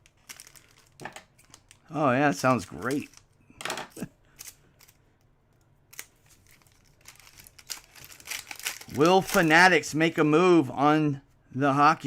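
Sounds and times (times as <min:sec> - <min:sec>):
packaging crinkling: 0:00.0 - 0:03.4, 0:05.9 - 0:09.9.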